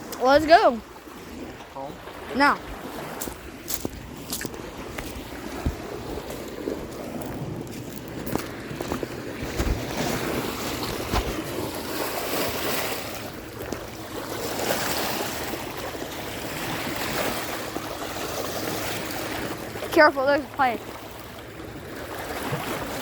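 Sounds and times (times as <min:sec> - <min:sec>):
wind buffeting microphone: 0:00.0 - 0:15.7
lake waves washing on shore: 0:00.0 - 0:23.0.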